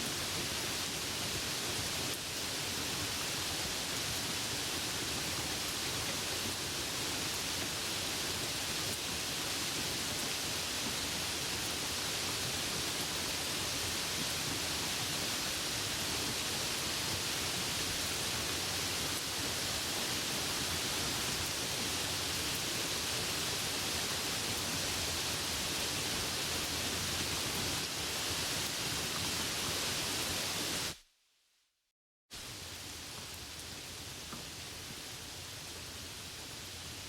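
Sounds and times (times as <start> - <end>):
dense rain hiss: 0.0 - 31.0, 32.3 - 37.0.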